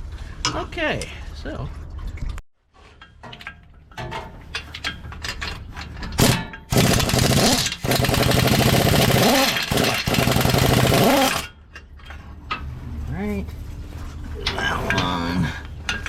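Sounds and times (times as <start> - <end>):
impact wrench hammering: 6.2 - 11.5.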